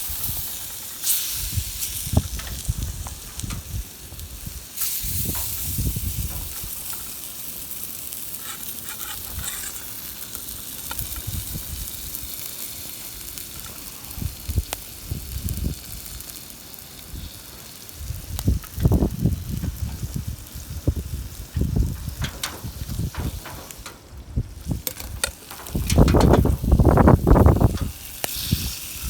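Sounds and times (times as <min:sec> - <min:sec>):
fire crackles: 0:00.0 - 0:29.0
food sizzling over campfire: 0:00.0 - 0:29.0
low bumps: 0:20.8 - 0:28.0.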